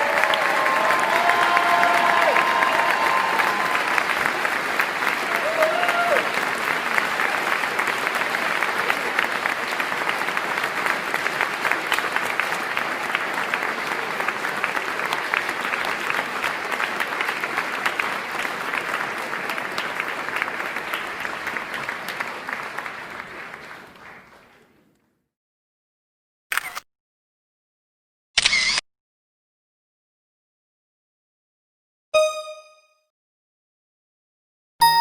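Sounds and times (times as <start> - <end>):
crowd clapping: 0.0 - 25.0.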